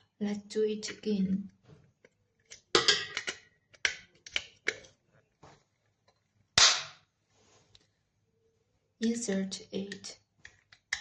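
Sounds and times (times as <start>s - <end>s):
glass cover clicking and knocking: 2.8s - 3.4s.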